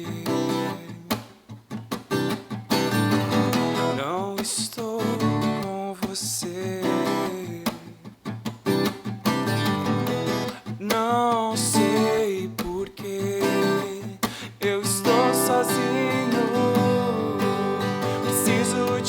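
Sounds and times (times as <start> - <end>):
acoustic guitar strumming: 8.7 - 19.0
wavering melody line: 14.9 - 19.0.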